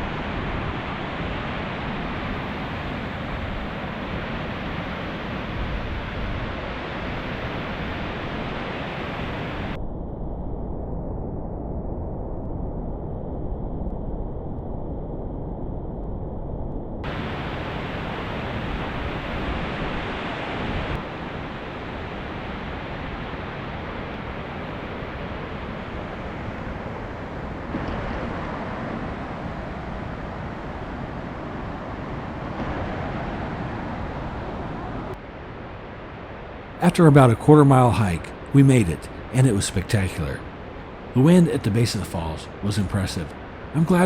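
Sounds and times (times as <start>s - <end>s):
wind on microphone: 0.0s - 36.7s
waterfall rushing: 41.2s - 43.2s, 43.8s - 44.0s.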